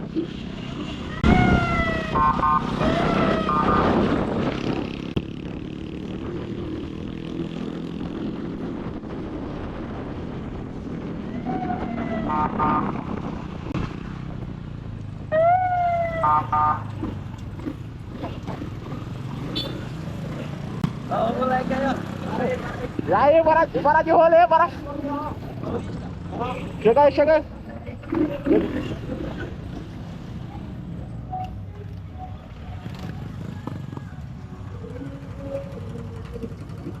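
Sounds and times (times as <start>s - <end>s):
electronic police siren blips: 1.2s - 4.1s, 15.4s - 16.8s
motorcycle engine running: 16.1s - 22.8s, 31.8s - 37.0s.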